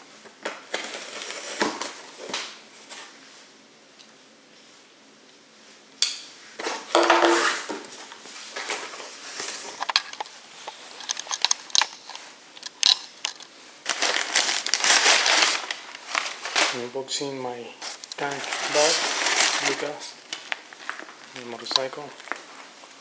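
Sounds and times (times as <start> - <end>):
packaging clicking and rustling: 8.6 - 16.8, 18.0 - 22.6.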